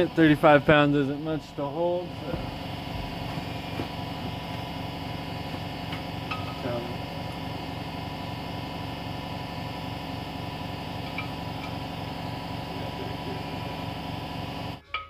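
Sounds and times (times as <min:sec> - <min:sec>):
machine humming with pulsing beat: 0:00.0 - 0:14.8.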